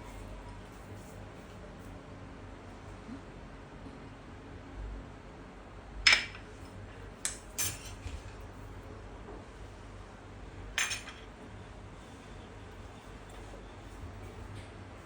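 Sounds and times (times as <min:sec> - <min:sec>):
kitchen utensils clinking: 0:07.3 - 0:08.0, 0:10.8 - 0:11.2.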